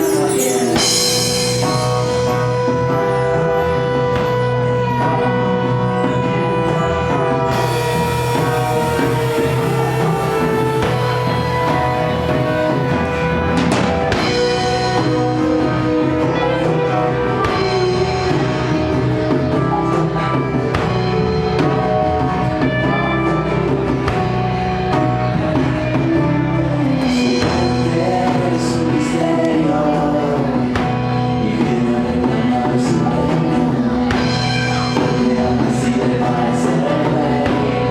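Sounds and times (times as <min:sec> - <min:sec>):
gliding lead guitar notes: 0:00.0 - 0:37.9
rock band playing live: 0:00.0 - 0:37.9.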